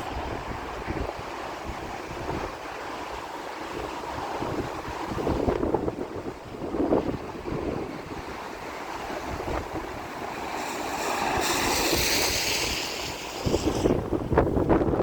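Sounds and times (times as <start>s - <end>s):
wind buffeting microphone: 0.0s - 15.0s
hiss: 9.9s - 14.1s.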